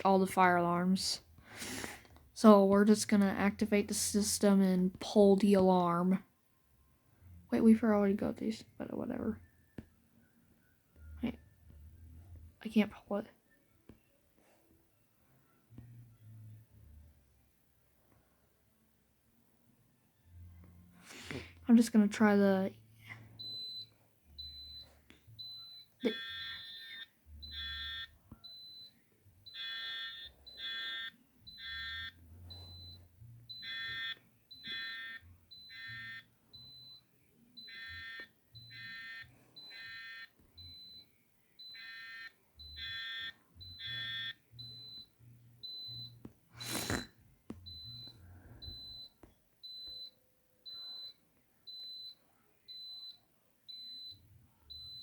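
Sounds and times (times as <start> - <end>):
fire alarm horns blasting: 25.4 - 28.9, 29.5 - 37.0, 37.6 - 41.0, 41.6 - 46.2.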